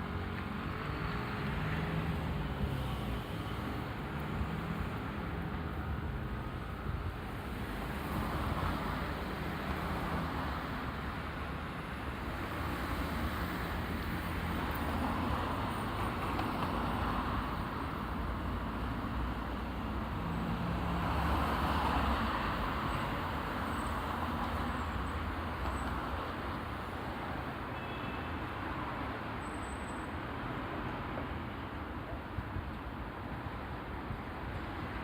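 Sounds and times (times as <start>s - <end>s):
cars passing: 0.0s - 27.6s.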